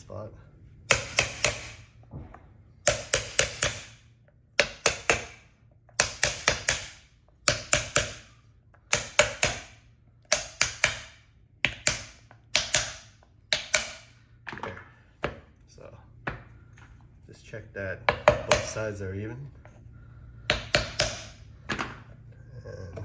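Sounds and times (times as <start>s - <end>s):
hammer striking tire: 0.9s - 8.3s, 8.9s - 14.1s.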